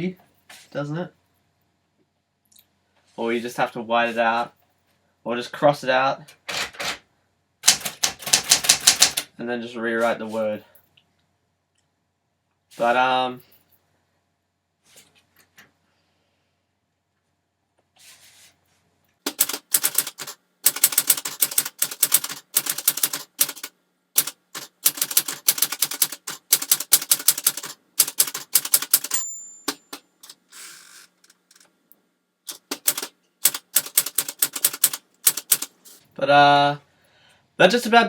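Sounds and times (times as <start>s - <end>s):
typewriter keys striking: 6.4s - 7.0s, 7.6s - 9.3s, 19.3s - 30.4s, 32.5s - 35.7s
typewriter bell ringing: 24.9s - 30.0s.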